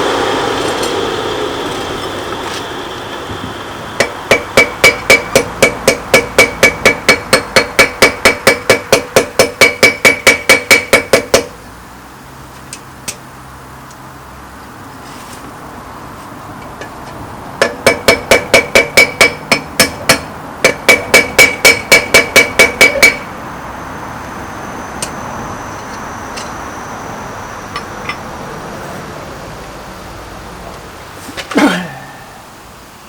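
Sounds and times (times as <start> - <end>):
hammer striking steel on anvil: 4.0 - 11.6, 17.6 - 23.3.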